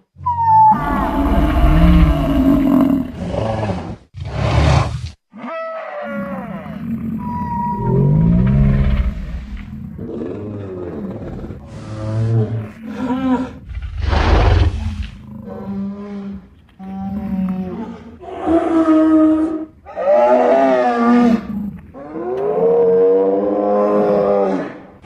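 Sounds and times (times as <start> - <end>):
harsh creature roar: 0.7 - 4.9, 5.5 - 15.8
deep creature bellows: 0.7 - 5.0, 6.1 - 16.5.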